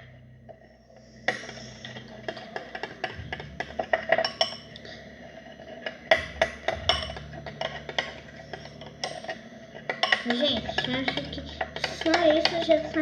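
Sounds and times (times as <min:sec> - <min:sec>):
utensil clinking against container: 0:06.1 - 0:13.0.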